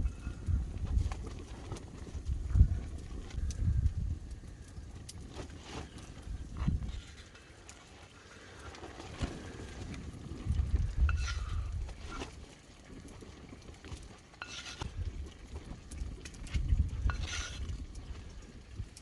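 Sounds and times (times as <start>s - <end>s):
low sizzle: 0.0s - 19.0s
utensil scraping a pan: 11.0s - 12.4s, 14.4s - 15.1s, 16.6s - 17.8s.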